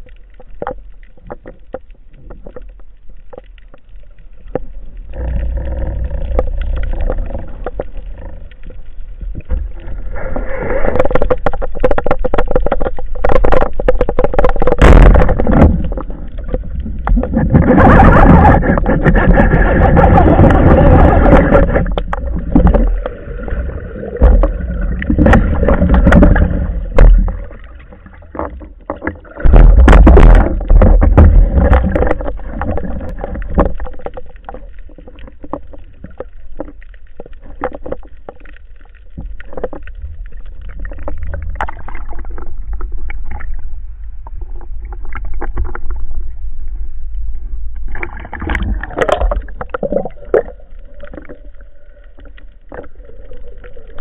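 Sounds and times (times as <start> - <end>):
muffled water sloshing and gurgling: 0.0 - 54.0
knocks and clicks: 28.3 - 33.9.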